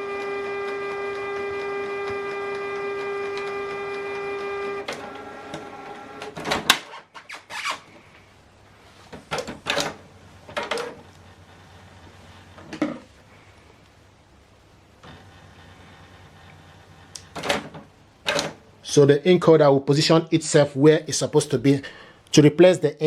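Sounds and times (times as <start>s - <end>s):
printer motor whirring: 0.0s - 6.7s.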